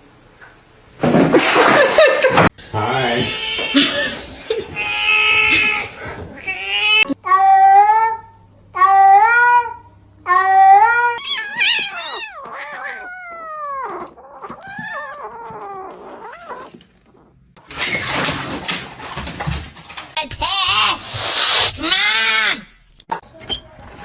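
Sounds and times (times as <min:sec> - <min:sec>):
cat meowing: 0:04.8 - 0:08.2, 0:08.8 - 0:17.3.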